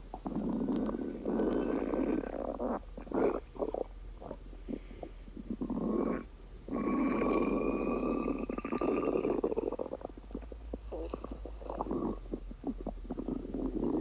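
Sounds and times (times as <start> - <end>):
stomach rumbling and gurgling: 0.0 - 14.0.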